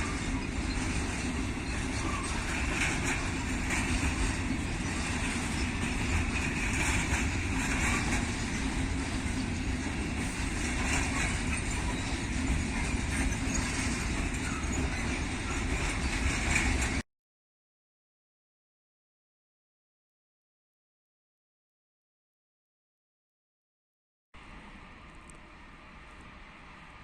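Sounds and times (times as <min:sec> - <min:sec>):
train wheels rumbling on rail: 0:00.0 - 0:17.0, 0:24.4 - 0:27.0.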